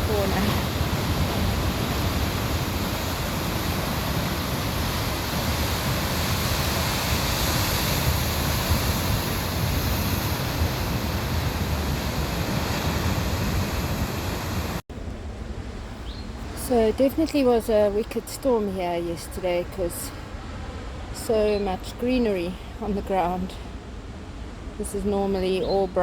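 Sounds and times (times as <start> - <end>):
wind buffeting microphone: 0.0 - 14.8
ocean surf on rocks: 0.0 - 26.0.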